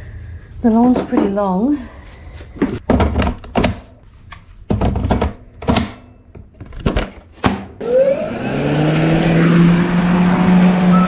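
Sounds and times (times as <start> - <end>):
small petrol engine starting: 7.8 - 11.0.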